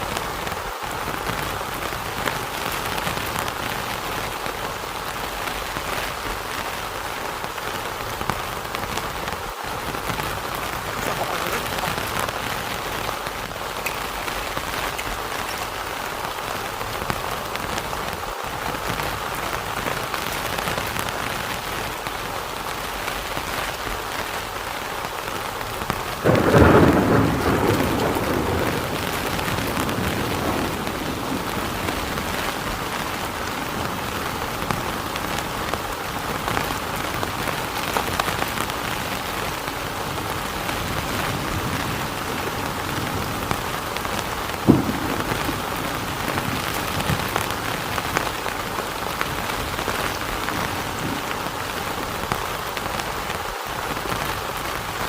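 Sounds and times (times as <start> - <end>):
heavy rain falling: 0.0 - 55.0
thunder clap rumbling: 9.9 - 23.4, 25.7 - 52.3.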